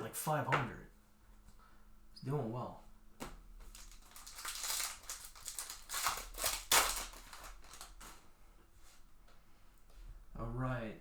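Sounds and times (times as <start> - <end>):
wrapper tearing and crinkling: 3.7 - 8.2.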